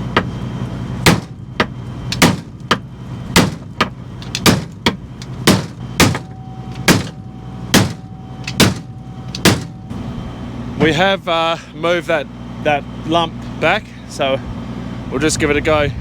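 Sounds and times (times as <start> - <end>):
hammer striking metal plate: 1.1 - 2.8, 3.4 - 9.8.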